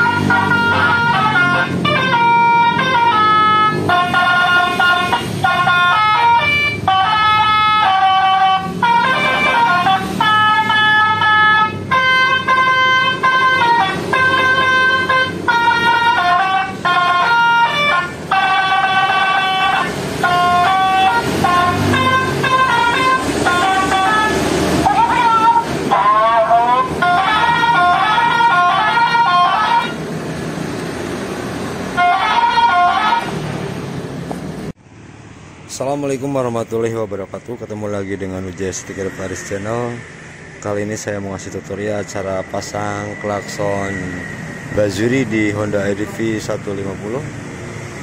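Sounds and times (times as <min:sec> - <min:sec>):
electronic bus horn melody: 0:00.0 - 0:30.1, 0:31.8 - 0:33.6.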